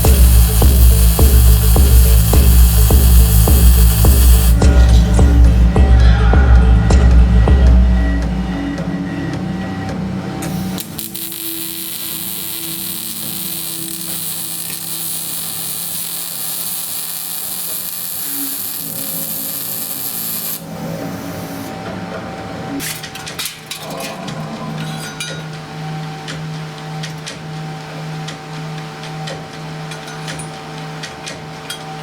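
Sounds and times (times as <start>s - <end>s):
shop tool hissing: 0.0s - 4.7s, 10.5s - 21.8s.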